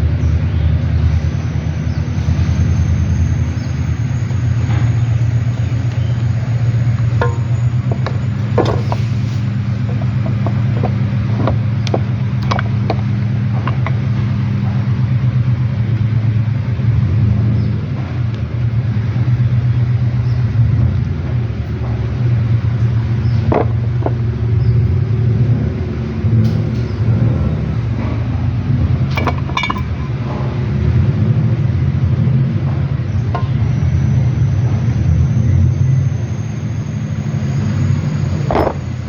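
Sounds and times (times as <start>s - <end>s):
car engine idling with a knock: 4.4s - 16.0s, 19.5s - 24.7s, 29.0s - 30.6s, 32.6s - 34.1s, 38.4s - 39.0s.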